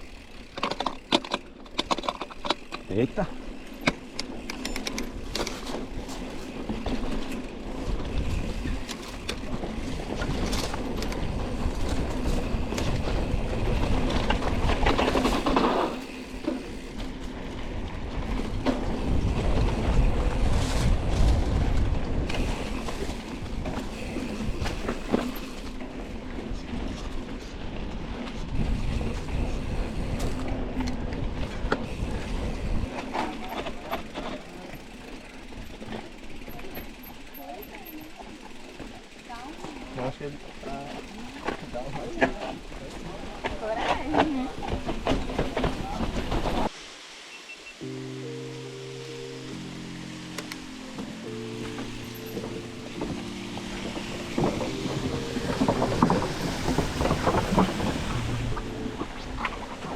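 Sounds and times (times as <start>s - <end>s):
bike rattling clatter: 0.0s - 46.7s, 51.5s - 59.9s
tyre and wind rush: 7.6s - 33.2s, 52.1s - 59.9s.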